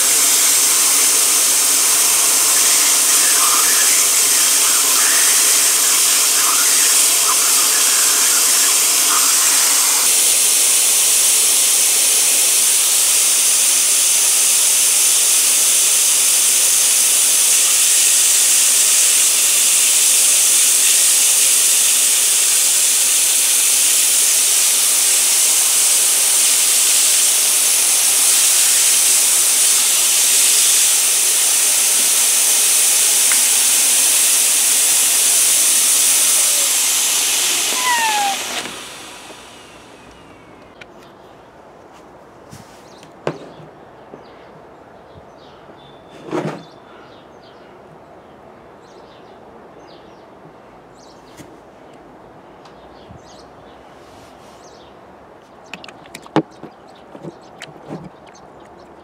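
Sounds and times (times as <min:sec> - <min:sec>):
rushing air hiss: 0:00.0 - 0:40.8.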